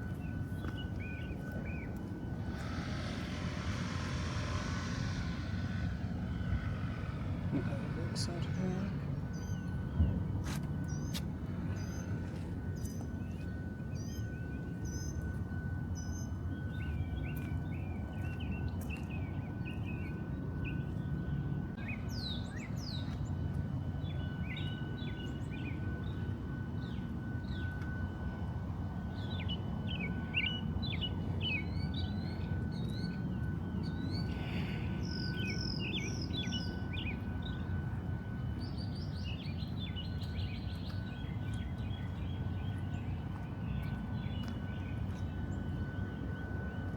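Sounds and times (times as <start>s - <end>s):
faint constant high tone: 0.0s - 46.9s
steady low rumble: 0.0s - 46.9s
birds chirping and trilling: 0.2s - 10.1s.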